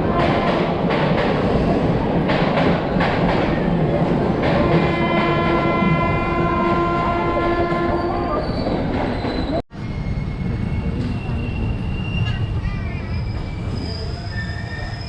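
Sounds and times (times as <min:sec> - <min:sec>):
moving train rumbling: 0:00.0 - 0:15.0
train horn blast: 0:04.6 - 0:08.4.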